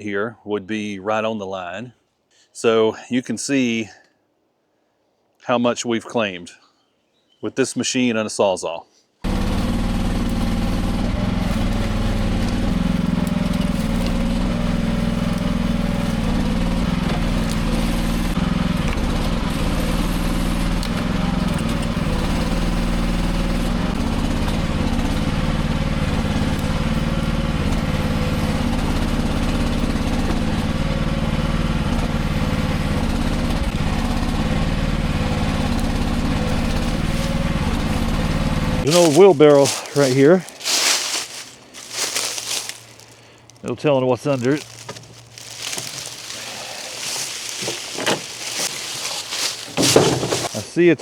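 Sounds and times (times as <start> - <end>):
small excavator engine running: 9.2 - 50.7.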